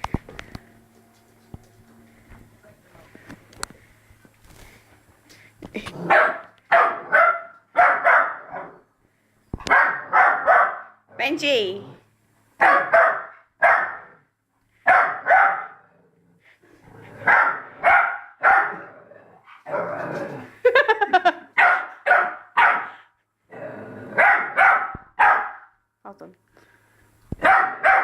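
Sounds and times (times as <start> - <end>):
puppy barking: 6.1 - 8.8, 9.6 - 11.0, 12.6 - 14.1, 14.9 - 15.8, 17.2 - 18.8, 21.6 - 23.0, 24.2 - 25.7, 27.4 - 28.0.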